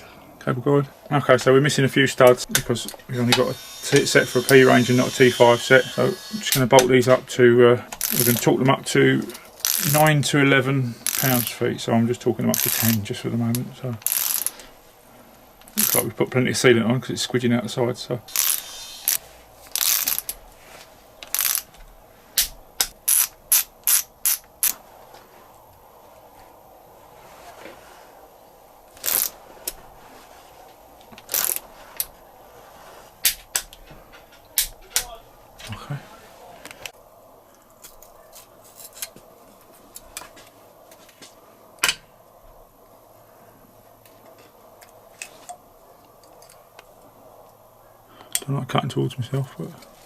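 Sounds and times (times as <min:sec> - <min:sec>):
ratchet wrench clicking: 0:08.0 - 0:08.4, 0:09.6 - 0:10.0, 0:11.0 - 0:11.5, 0:12.6 - 0:13.0, 0:14.0 - 0:14.6, 0:15.8 - 0:16.0, 0:18.3 - 0:20.4, 0:21.3 - 0:21.7, 0:22.8 - 0:24.8, 0:29.0 - 0:29.4, 0:31.3 - 0:31.6.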